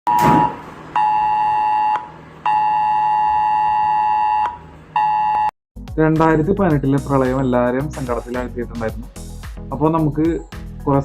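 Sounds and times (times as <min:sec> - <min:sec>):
phone emergency alert tone: 0:00.1 - 0:05.5.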